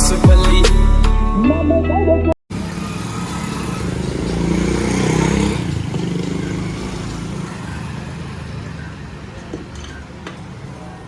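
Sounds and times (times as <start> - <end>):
motorcycle engine running: 2.5 - 11.0.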